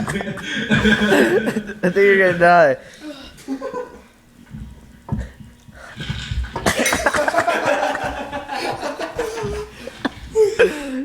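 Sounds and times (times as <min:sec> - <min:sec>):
person laughing: 0:00.0 - 0:01.9, 0:06.7 - 0:11.0.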